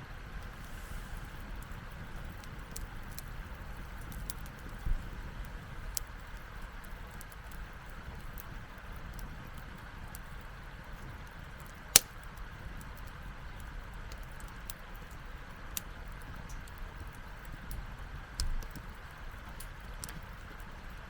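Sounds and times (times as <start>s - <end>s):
campfire crackling and popping: 0.0s - 21.0s
low wind rumble: 0.0s - 21.0s.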